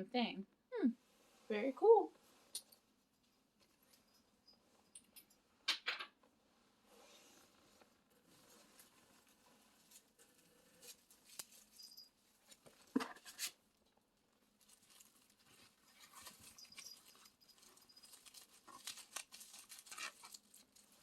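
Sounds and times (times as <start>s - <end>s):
packaging rustling: 14.5s - 21.0s.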